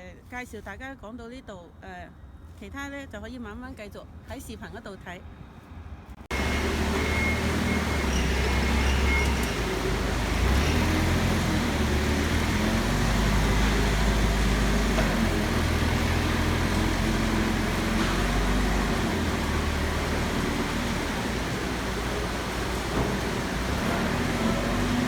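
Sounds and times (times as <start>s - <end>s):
low engine drone: 6.3s - 25.0s.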